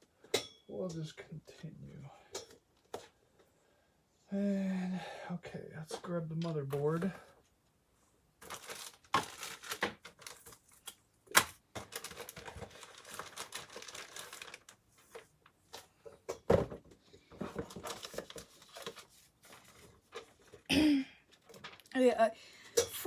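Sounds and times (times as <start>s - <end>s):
packaging crinkling and rustling: 8.4s - 15.8s, 17.3s - 20.7s, 21.3s - 21.9s.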